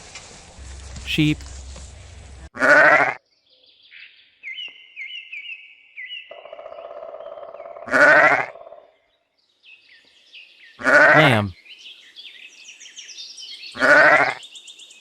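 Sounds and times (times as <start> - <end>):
sheep bleating: 2.6 - 3.2, 7.9 - 8.5, 10.8 - 11.5.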